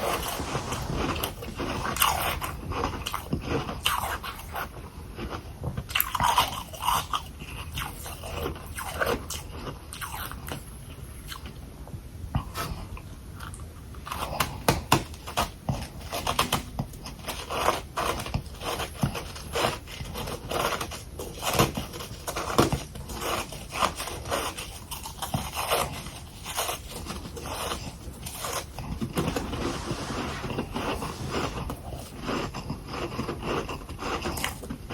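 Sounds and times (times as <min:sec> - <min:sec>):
crunching frost: 0:00.0 - 0:03.2.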